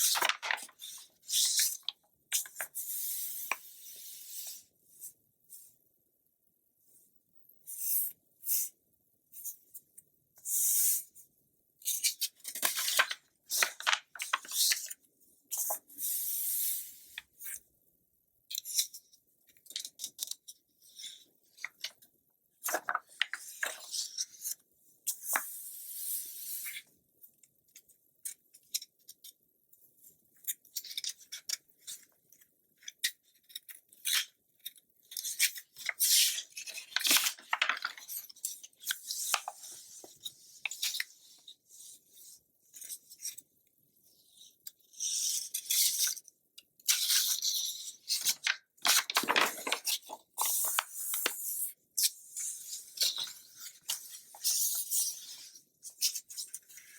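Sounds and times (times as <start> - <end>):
magazine pages rustling: 0.0 - 0.8, 12.6 - 14.8, 36.7 - 38.3, 48.2 - 51.4.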